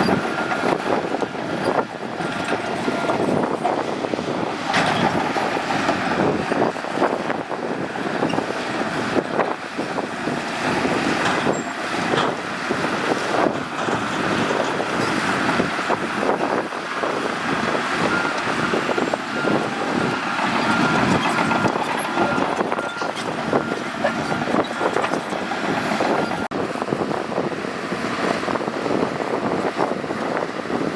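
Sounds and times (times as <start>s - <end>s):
bulldozer diesel engine: 0.0s - 30.9s.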